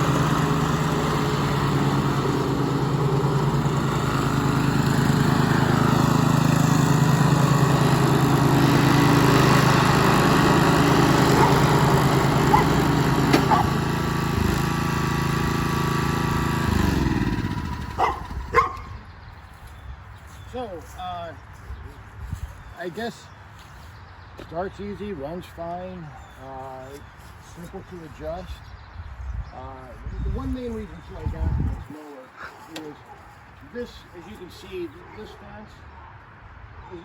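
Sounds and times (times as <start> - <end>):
lawn mower engine running: 0.0 - 19.0.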